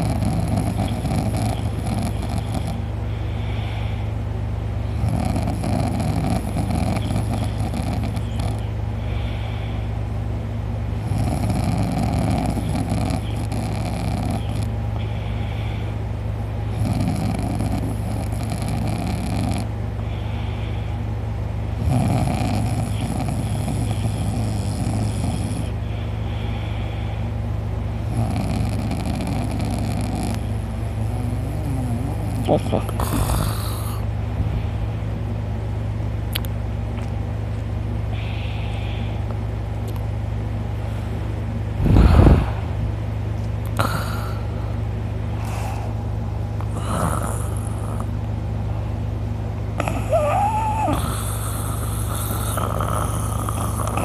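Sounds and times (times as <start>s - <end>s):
man snoring loudly: 0.0s - 2.9s, 4.9s - 8.7s, 11.0s - 14.7s, 16.7s - 19.7s, 21.8s - 25.8s, 28.1s - 30.4s, 31.0s - 34.1s, 43.8s - 44.6s, 46.6s - 48.1s, 49.8s - 54.0s
steady low hum: 0.0s - 54.0s.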